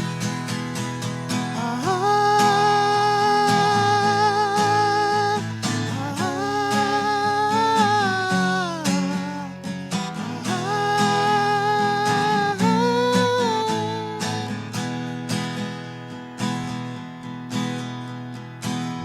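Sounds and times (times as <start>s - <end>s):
wavering lead guitar notes: 0.0s - 15.0s
guitar chords: 0.0s - 19.0s.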